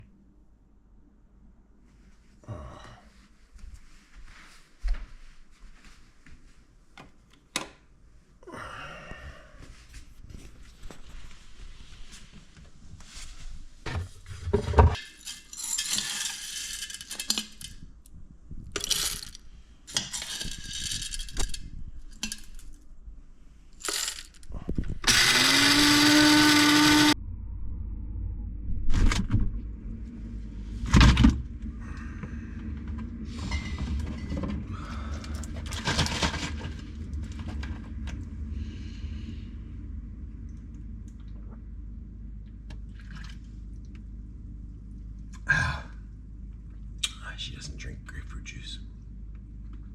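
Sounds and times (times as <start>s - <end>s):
low hum: 8.0s - 49.9s
kitchen items clattering: 14.0s - 17.8s, 18.8s - 22.7s, 35.3s - 37.8s
small electric motor spinning: 25.0s - 27.2s.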